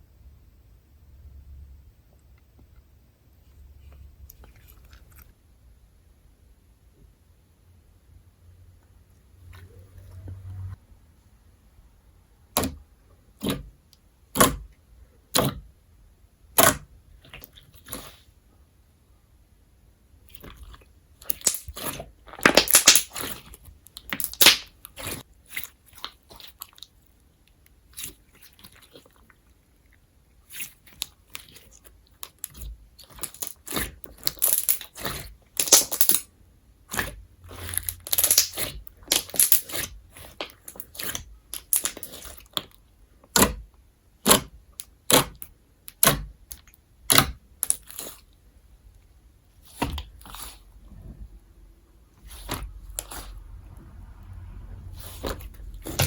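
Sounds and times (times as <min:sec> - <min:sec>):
slime popping: 0:20.3 - 0:26.6, 0:30.5 - 0:36.3, 0:36.9 - 0:43.6
slime crackling and snapping: 0:21.2 - 0:26.9, 0:30.5 - 0:36.3, 0:36.9 - 0:43.6.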